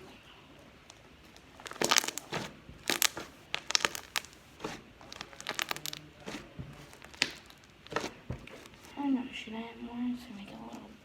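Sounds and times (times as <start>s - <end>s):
slime crackling and popping: 0.8s - 8.9s.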